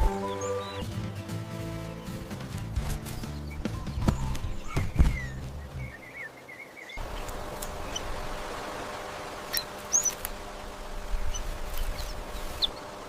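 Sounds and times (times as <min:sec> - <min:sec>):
small birds chirping: 0:00.0 - 0:01.2, 0:01.8 - 0:13.0
outdoor background hiss: 0:04.4 - 0:13.0.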